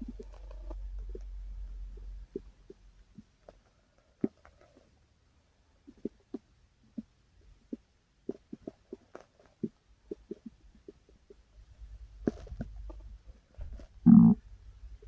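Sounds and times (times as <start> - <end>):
stomach growling: 13.6 - 14.4.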